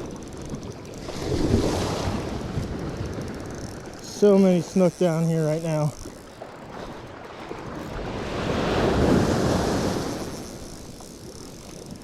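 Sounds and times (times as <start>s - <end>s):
wave rushing onto beach: 8.1s - 10.3s.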